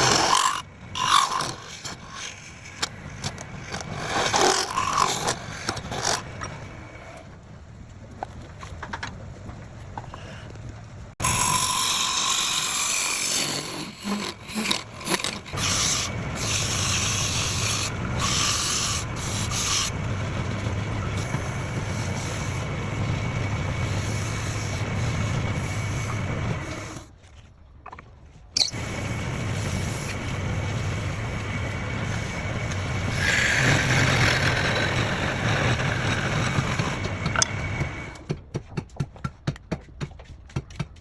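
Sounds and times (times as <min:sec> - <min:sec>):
wood scraping on a lathe: 0:00.0 - 0:07.0, 0:11.2 - 0:27.1, 0:28.8 - 0:38.2
lathe motor hum: 0:11.2 - 0:27.1, 0:28.8 - 0:38.2.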